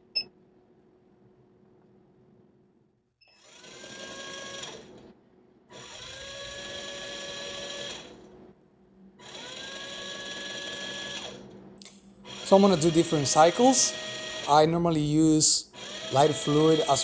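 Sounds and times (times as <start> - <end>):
electric motor whining: 5.8 - 8.2, 12.2 - 14.7, 15.7 - 17.0.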